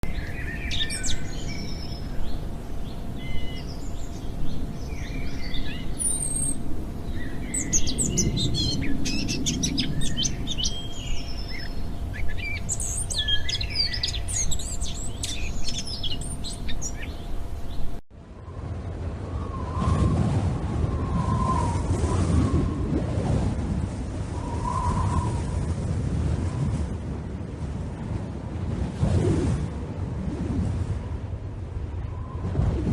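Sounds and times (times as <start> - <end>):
birds chirping and trilling: 0.0 - 18.0
low steady background noise: 0.0 - 19.4.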